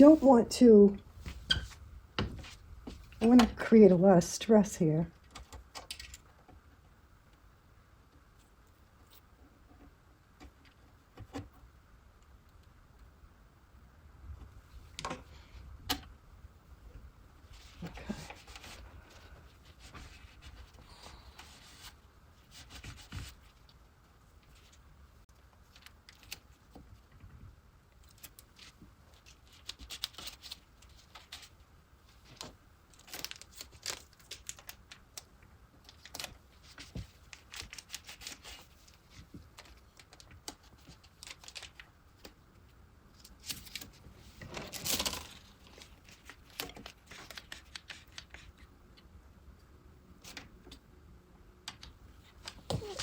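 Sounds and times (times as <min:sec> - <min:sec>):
rustling: 0:52.1 - 0:53.0.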